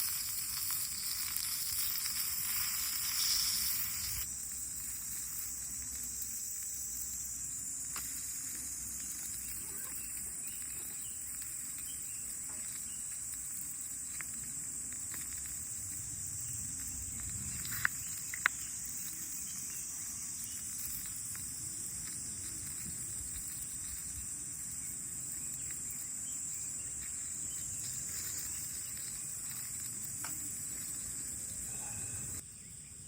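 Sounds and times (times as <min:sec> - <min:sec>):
insects chirring: 0:00.0 - 0:33.0.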